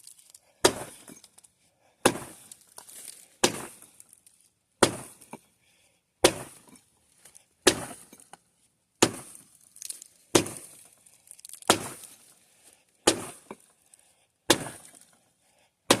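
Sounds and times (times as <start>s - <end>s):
axe chopping wood: 0.6s - 1.2s, 2.0s - 2.5s, 3.4s - 3.8s, 4.8s - 5.4s, 6.2s - 6.8s, 7.6s - 8.2s, 9.0s - 9.5s, 10.3s - 10.8s, 11.6s - 12.2s, 13.0s - 13.6s, 14.5s - 15.1s.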